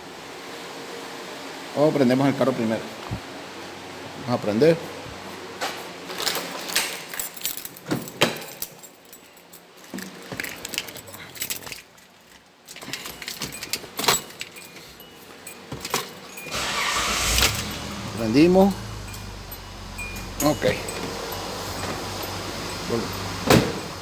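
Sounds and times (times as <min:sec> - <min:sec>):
keys jangling: 0:06.1 - 0:24.0.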